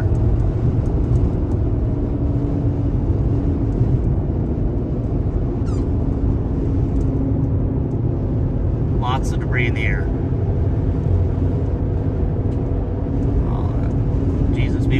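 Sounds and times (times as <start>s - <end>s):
vehicle noise: 0.0s - 14.9s
wind rumble: 0.0s - 14.9s
brief high squeak: 5.7s - 5.9s.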